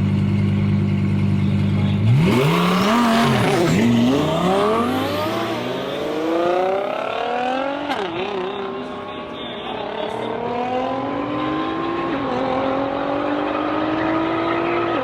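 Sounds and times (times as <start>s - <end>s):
drag car engine revving: 0.0s - 9.1s.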